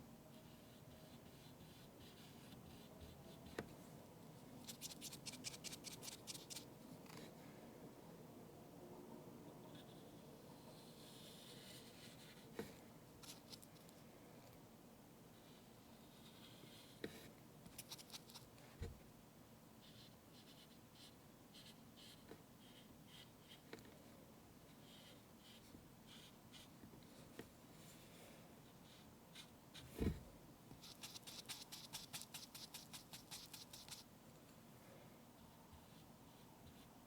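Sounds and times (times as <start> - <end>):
scratchy drawing strokes: 4.6 - 6.7, 30.8 - 34.1.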